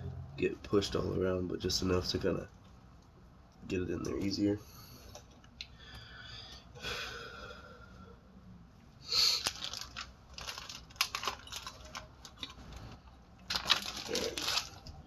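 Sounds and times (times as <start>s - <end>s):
crinkling rustles: 9.3s - 15.0s.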